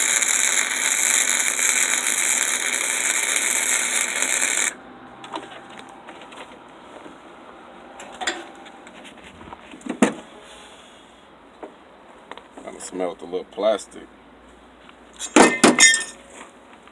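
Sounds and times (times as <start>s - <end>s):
welding arc crackling: 0.0s - 4.8s.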